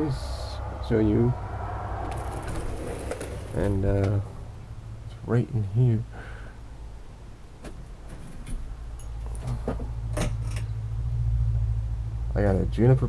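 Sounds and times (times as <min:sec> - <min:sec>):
steady low rumble: 0:00.0 - 0:13.0
sharp handling knocks and clicks: 0:07.6 - 0:10.7.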